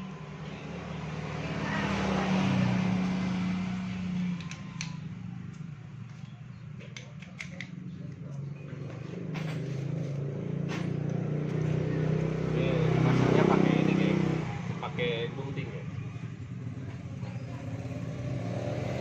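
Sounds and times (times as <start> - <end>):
vehicle passing: 0.0 - 6.1, 7.7 - 19.0
steady low engine hum: 0.0 - 18.7
light tool clicks: 4.4 - 8.2.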